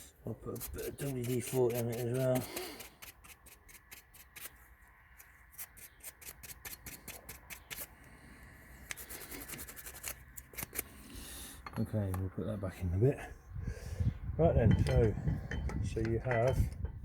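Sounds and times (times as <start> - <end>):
scrubbing strokes by hand: 0.0 - 4.6, 8.9 - 10.9.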